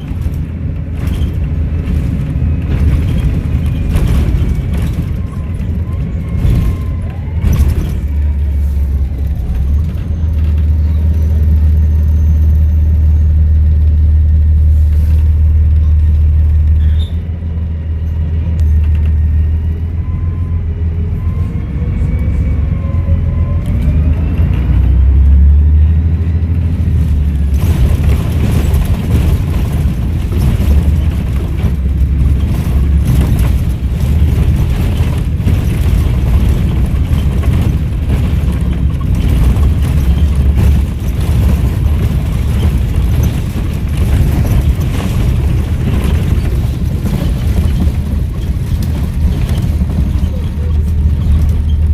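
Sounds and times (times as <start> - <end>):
bus diesel engine rumble: 0.0 - 51.9.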